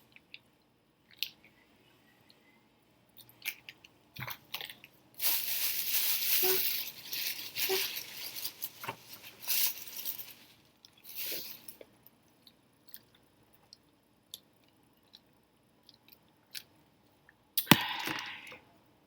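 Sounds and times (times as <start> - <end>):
crinkly rustling: 3.4 - 11.9.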